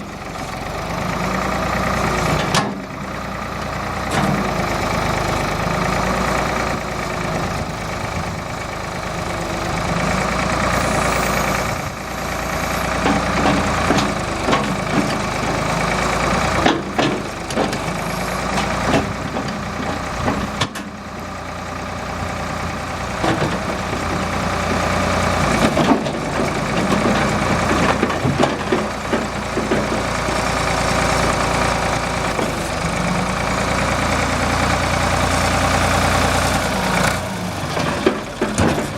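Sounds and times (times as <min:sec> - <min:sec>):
tractor engine running: 0:00.0 - 0:38.9
irregular knocks and clanks: 0:16.4 - 0:21.0, 0:25.4 - 0:30.6, 0:37.7 - 0:38.9.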